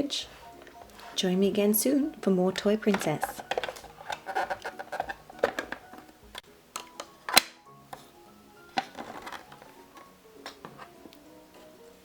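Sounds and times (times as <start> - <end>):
soft plucked background music: 0.0 - 12.0.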